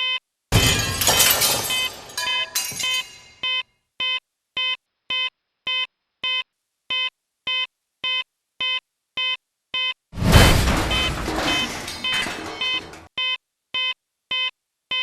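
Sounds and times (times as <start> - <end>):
alarm clock beeping: 1.6 - 5.3.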